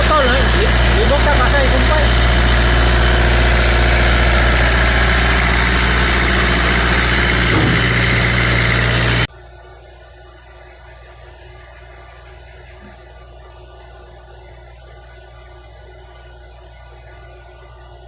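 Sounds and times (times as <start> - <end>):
diesel generator humming: 0.0 - 9.3.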